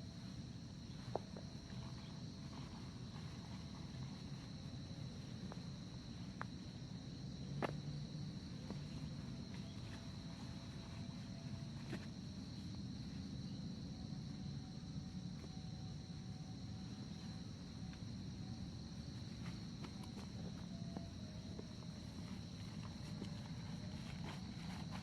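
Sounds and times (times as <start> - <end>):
insects droning: 0.0 - 25.0.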